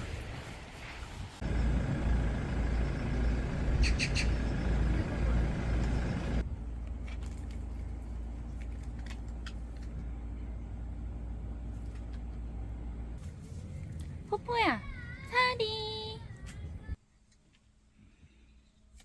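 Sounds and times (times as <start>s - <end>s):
road vehicle rumble: 0.0s - 17.0s.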